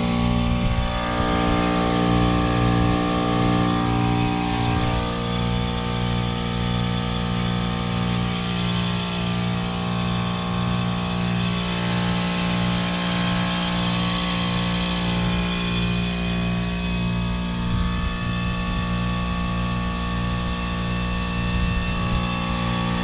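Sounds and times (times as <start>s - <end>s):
heat pump compressor hum: 0.0s - 23.0s.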